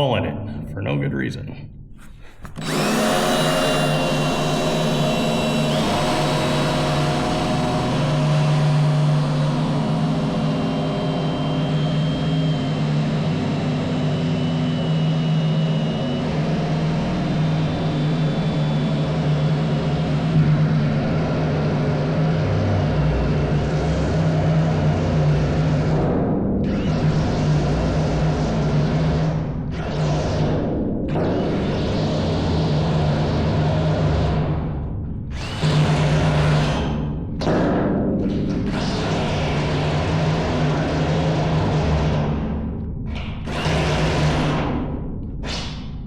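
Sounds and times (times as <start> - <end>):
cordless drill drilling through steel: 2.3 - 21.6, 35.4 - 37.1, 43.5 - 44.6.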